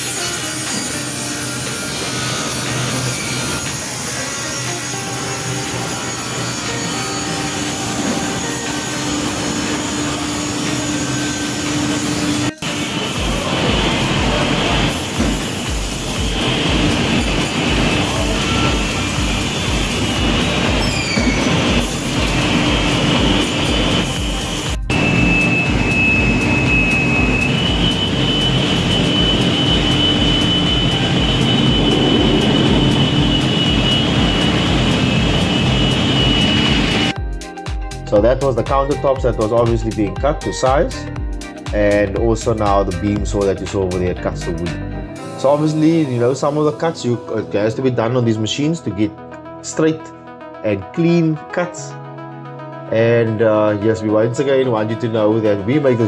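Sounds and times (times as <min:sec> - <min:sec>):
dust extraction: 0:00.0 - 0:37.2
industrial saw cutting board: 0:00.0 - 0:37.2
steady hum: 0:06.2 - 0:37.2.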